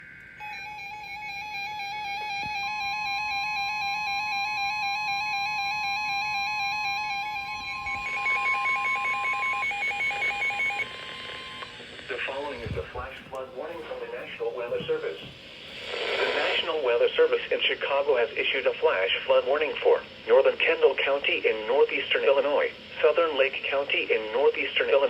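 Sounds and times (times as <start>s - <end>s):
steady high tone: 0.0s - 18.8s
warbling two-pitch alert tone: 0.4s - 11.7s.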